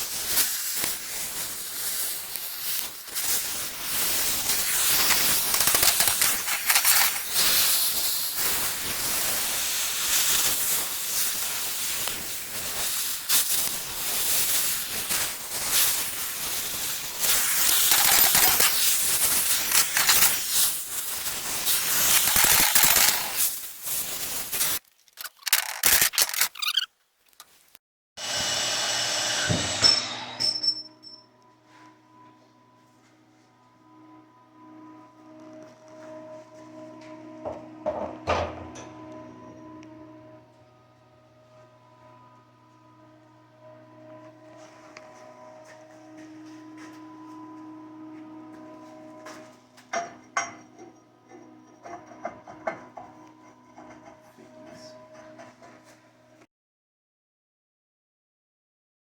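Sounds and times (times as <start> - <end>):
cutting torch hissing: 0.0 - 24.8.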